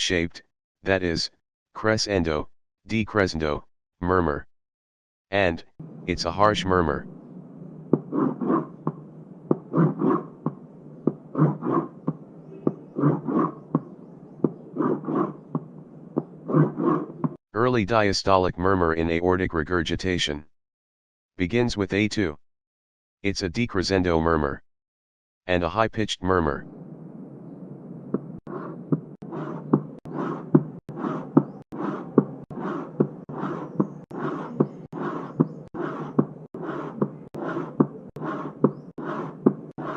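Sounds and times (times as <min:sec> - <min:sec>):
heartbeat with harsh murmur: 0:07.8 - 0:17.4.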